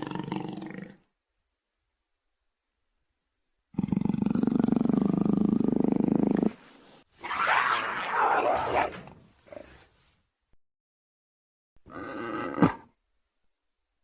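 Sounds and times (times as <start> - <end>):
low pulsing creature growl: 3.8 - 6.5.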